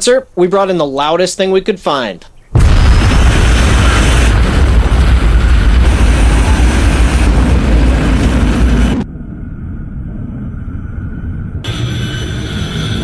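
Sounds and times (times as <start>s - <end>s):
faint low rumble: 2.6s - 11.8s
loud roaring noise blast: 2.6s - 13.0s.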